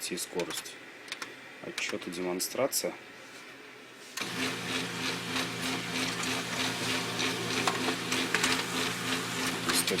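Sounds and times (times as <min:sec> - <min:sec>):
laser printer printing: 0:04.2 - 0:10.0.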